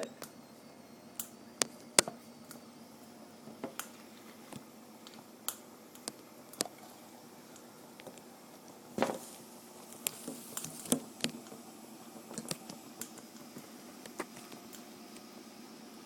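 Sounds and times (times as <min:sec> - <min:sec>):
faint steady hiss: 0:00.0 - 0:16.0
sharp clicks and pops: 0:03.6 - 0:06.8.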